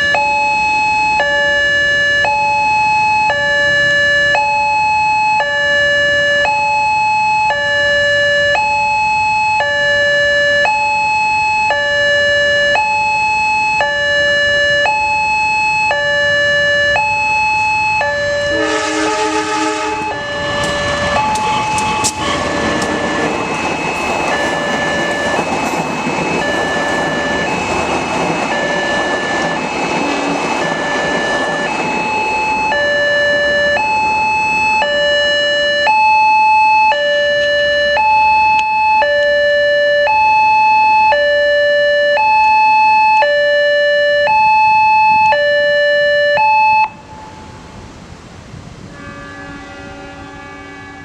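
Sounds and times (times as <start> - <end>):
train passing on rails: 0.0 - 38.9, 46.9 - 51.0
level crossing two-tone alarm: 0.0 - 47.2
train horn: 18.1 - 23.6, 48.9 - 51.0
sharp rail clacks: 20.5 - 33.6.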